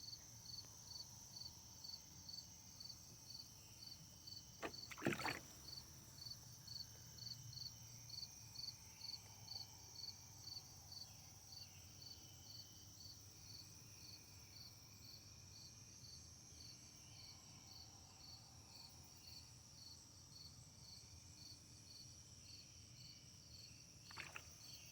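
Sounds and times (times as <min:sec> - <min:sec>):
faint insect chirping: 0:00.0 - 0:24.9.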